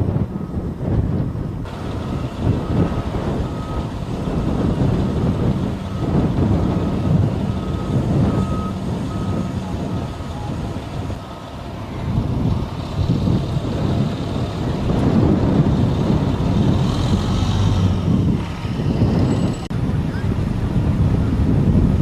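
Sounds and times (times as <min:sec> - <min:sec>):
low rumble: 0:00.0 - 0:22.0
reversing alarm beeping: 0:00.3 - 0:00.7, 0:01.7 - 0:11.9.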